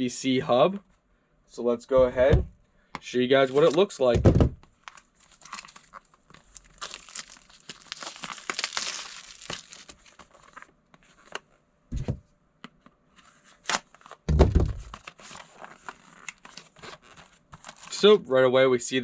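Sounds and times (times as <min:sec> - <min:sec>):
packaging crinkling and tearing: 0:03.4 - 0:03.9, 0:04.8 - 0:10.7, 0:14.9 - 0:18.0.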